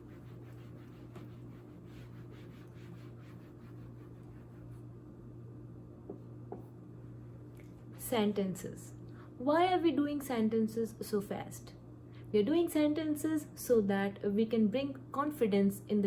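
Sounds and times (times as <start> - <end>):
scratching of writing: 0.0 - 4.9
low electrical hum: 0.0 - 16.0.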